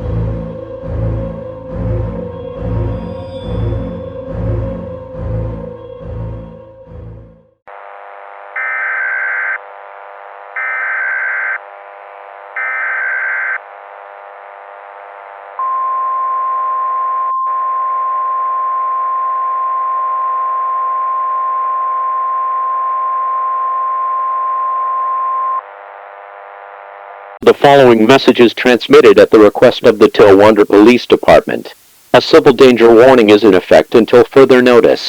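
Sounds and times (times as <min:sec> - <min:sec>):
buzzy static hiss: 0:07.7 - 0:15.6, 0:25.6 - 0:35.0
long steady attention tone: 0:07.7 - 0:35.0
screeching digital data bursts: 0:08.6 - 0:09.6, 0:10.6 - 0:11.6, 0:12.6 - 0:13.6.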